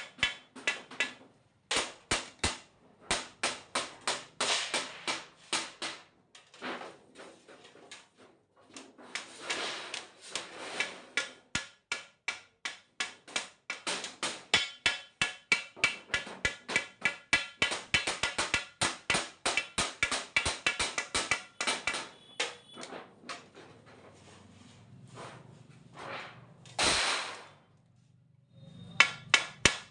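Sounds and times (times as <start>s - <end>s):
hammer striking metal: 0.0s - 6.0s, 10.8s - 22.9s, 28.6s - 29.9s.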